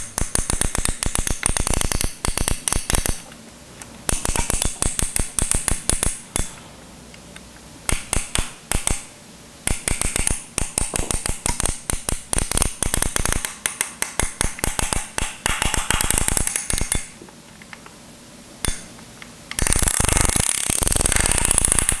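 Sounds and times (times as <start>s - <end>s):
iron control dial clicking: 0.0s - 3.2s, 4.1s - 6.6s, 7.9s - 9.1s, 9.7s - 17.1s, 19.5s - 22.0s.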